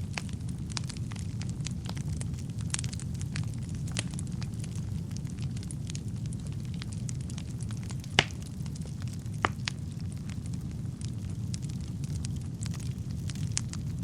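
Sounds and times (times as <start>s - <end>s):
wood fire crackling and popping: 0.0s - 14.0s.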